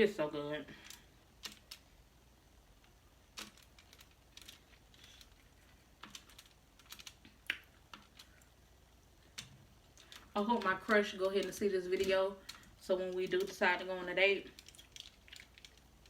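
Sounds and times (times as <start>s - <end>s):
person chewing: 14.6s - 16.0s.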